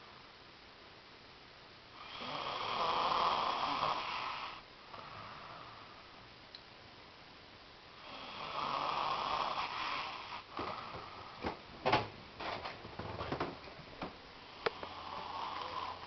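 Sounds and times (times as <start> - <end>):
person snoring: 2.0 - 6.0, 8.0 - 11.4, 14.4 - 16.0.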